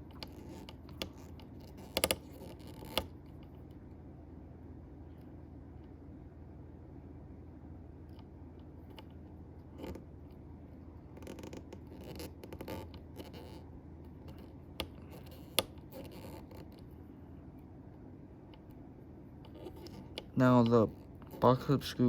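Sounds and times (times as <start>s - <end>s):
steady low hum: 0.0s - 22.0s
screwdriver scratching and scraping: 0.1s - 3.1s, 14.2s - 16.9s, 19.4s - 21.5s.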